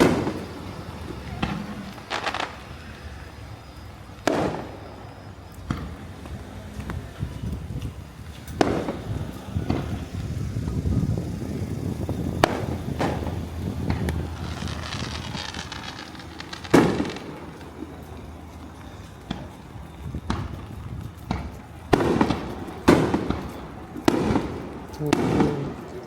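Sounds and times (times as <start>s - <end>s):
firework shells booming: 0.0s - 7.4s, 8.3s - 26.0s
dense firework crackling: 0.0s - 26.0s
low rumble: 5.7s - 25.9s.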